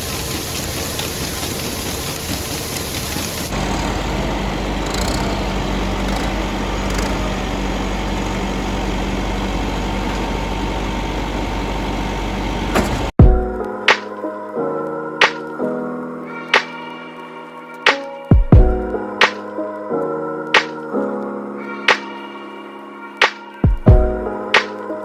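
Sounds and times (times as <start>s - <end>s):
machinery rattling hiss: 0.0s - 3.9s
engine idling with low hum: 0.0s - 13.2s.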